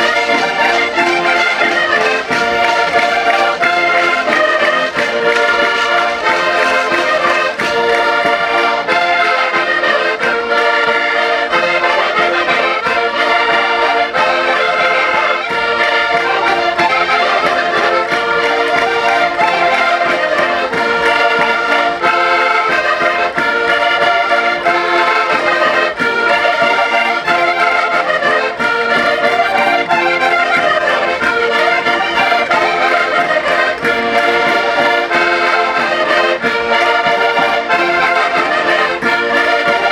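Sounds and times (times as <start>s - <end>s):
concertinas playing dance tune: 0.0s - 39.9s.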